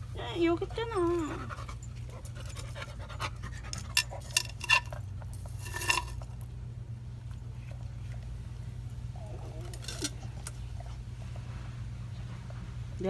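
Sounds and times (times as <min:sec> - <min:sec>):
steady low hum: 0:00.0 - 0:13.0
dog chewing with sharp clicks: 0:00.6 - 0:05.5, 0:06.6 - 0:11.5.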